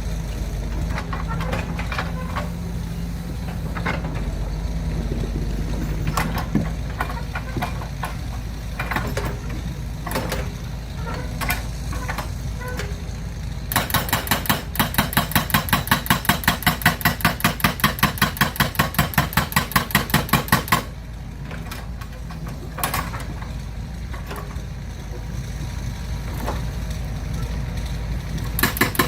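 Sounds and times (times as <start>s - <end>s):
rapid mechanical clatter: 13.7s - 29.0s.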